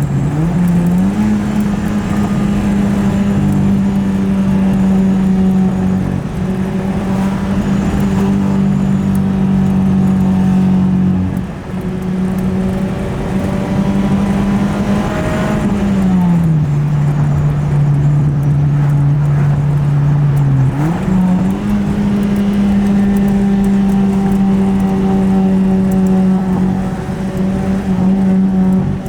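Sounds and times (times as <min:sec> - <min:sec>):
car engine running: 0:00.0 - 0:29.0.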